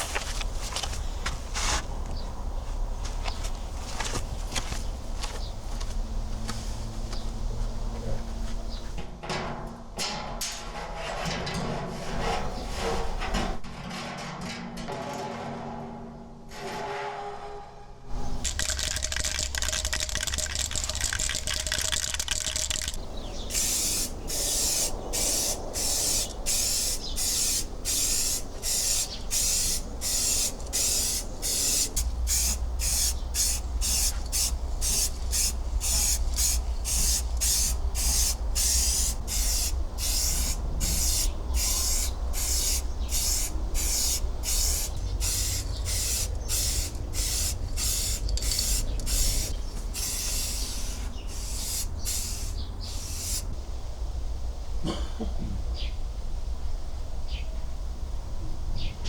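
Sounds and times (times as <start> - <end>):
rhythmic hissing strokes: 18.2 - 53.5.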